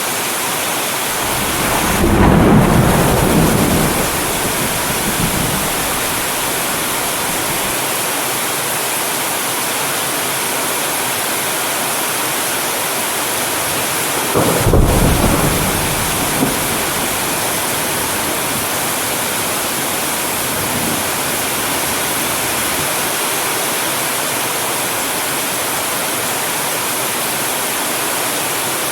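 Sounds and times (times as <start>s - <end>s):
steady rain: 0.0s - 28.9s
distant thunder rumbling: 1.1s - 7.8s, 13.6s - 23.2s.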